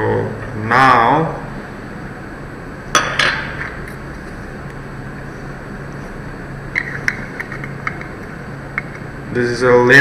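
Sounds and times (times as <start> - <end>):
low background hum: 0.0 - 10.0.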